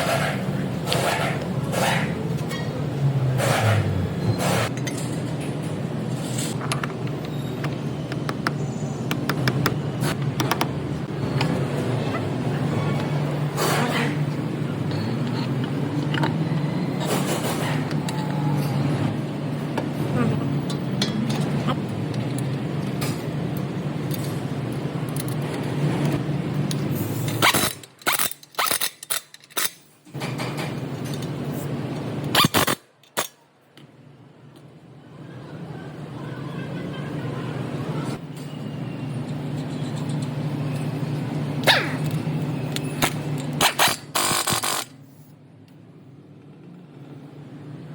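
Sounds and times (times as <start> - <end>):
sharp mechanical clicks: 43.0 - 45.0.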